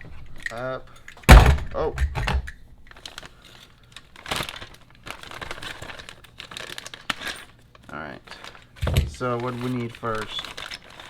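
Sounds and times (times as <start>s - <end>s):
plastic bag crinkling: 2.9s - 11.0s.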